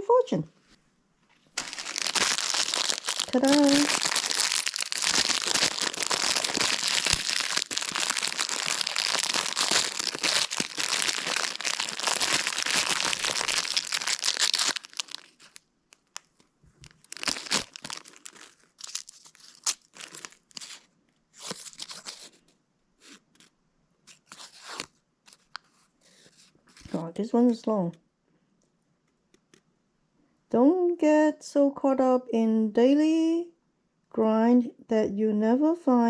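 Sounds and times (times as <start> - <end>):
plastic wrapper crinkling and tearing: 1.5 - 23.5, 24.1 - 27.0
cookie crunching as broken open: 1.6 - 22.4.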